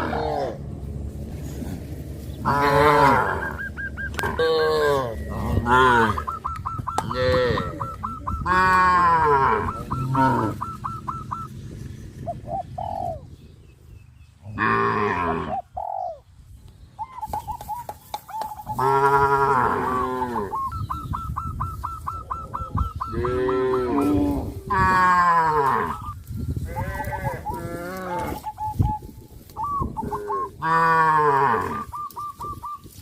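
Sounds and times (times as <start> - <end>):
cattle mooing: 0.0 - 0.7, 2.4 - 6.3, 7.0 - 10.6, 14.5 - 15.6, 18.8 - 20.5, 23.1 - 26.0, 26.7 - 28.5, 30.2 - 31.9
bird calling high notes: 2.4 - 13.1, 17.0 - 24.3, 31.7 - 33.0.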